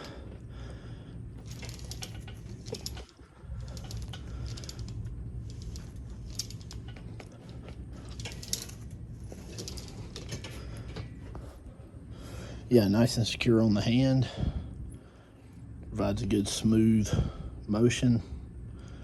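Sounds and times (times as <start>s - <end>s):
steady low hum: 0.0s - 19.0s
metal hardware clinking: 1.4s - 11.2s.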